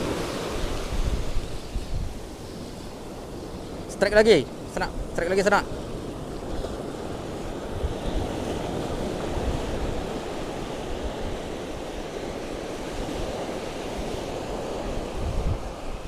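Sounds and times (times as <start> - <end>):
waves washing on shore: 0.0 - 16.0
wind buffeting microphone: 0.0 - 16.0.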